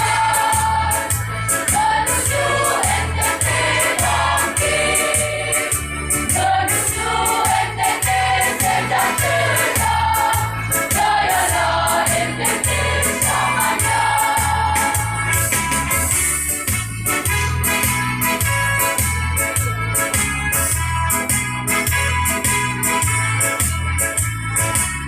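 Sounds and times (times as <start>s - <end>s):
choir singing a march: 0.0s - 15.3s
steady bass beat: 0.0s - 25.0s.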